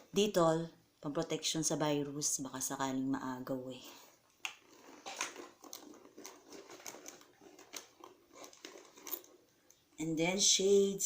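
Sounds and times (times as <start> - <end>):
items rummaged in handbag: 4.6 - 10.0.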